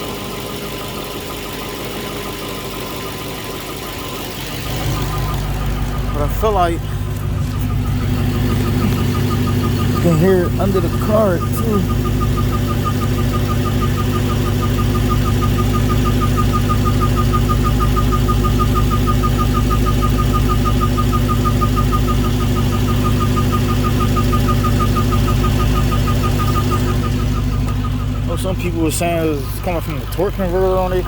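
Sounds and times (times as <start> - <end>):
car engine idling: 0.0 - 31.0
fast regular chirp: 0.2 - 31.0.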